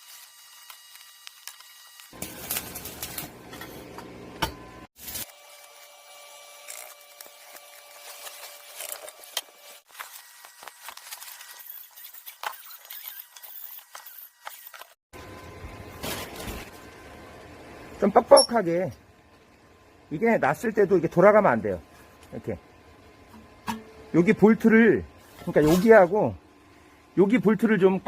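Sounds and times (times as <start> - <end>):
metal stove parts clinking: 23.6 - 24.0.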